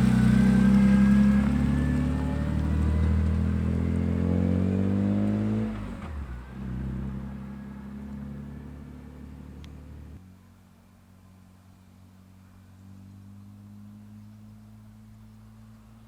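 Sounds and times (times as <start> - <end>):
car engine revs falling: 0.0 - 10.2.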